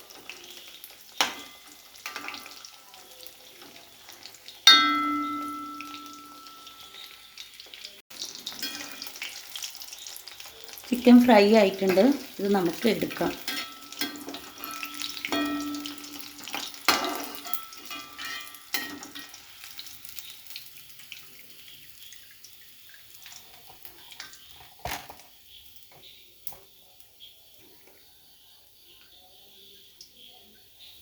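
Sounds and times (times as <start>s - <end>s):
chicken sizzling in oil: 0.0s - 31.0s
utensil clinking against pan: 4.7s - 6.9s, 13.3s - 19.4s.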